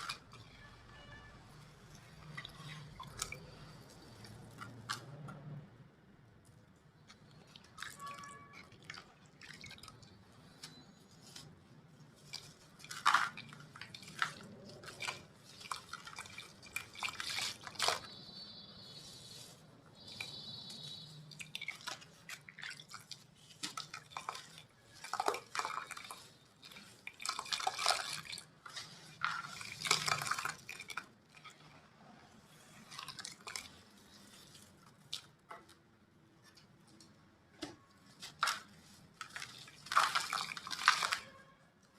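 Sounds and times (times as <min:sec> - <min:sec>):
small bits falling clicks: 0:38.3 - 0:41.4.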